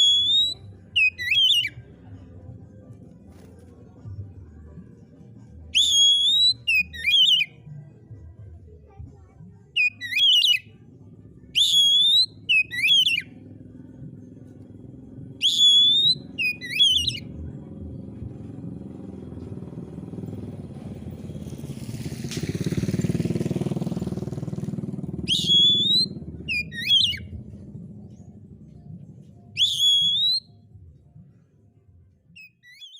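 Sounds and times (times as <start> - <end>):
bird singing whistled phrases: 0.0 - 1.8, 5.7 - 7.6, 9.8 - 10.7, 11.6 - 13.3, 15.4 - 17.4, 25.2 - 27.3, 29.6 - 30.5, 32.4 - 32.9
motor vehicle passing: 0.0 - 7.9, 9.8 - 32.9.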